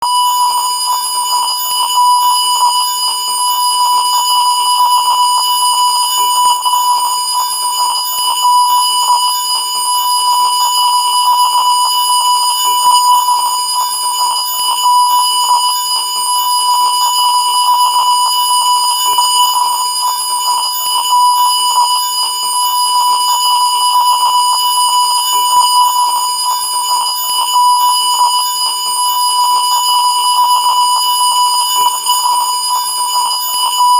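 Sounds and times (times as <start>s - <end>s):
continuous reference test tone: 0.0s - 33.9s.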